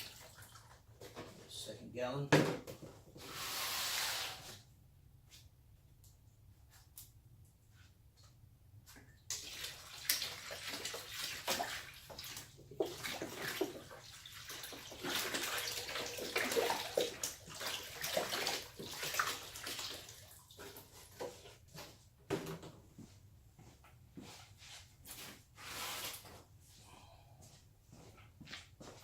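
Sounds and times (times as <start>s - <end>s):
water pouring and splashing: 0.0s - 0.9s, 9.3s - 21.4s.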